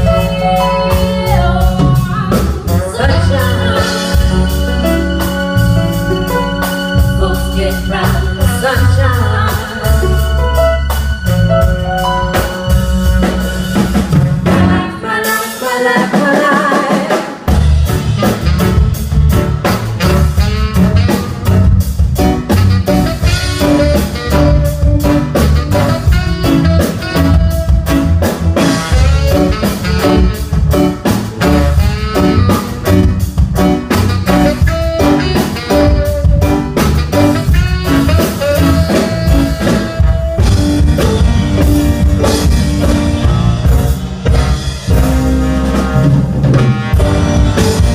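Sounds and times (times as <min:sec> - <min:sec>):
bass: 0:00.0 - 0:16.3, 0:17.4 - 0:47.9
drum kit: 0:00.0 - 0:47.9
live band playing: 0:00.0 - 0:47.9.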